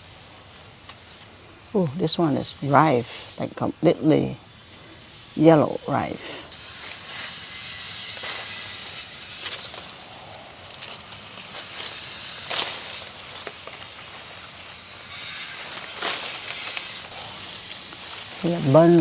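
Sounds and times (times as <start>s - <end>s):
leaves and branches rustling: 0.0s - 19.0s
branches cracking and snapping: 8.1s - 19.0s.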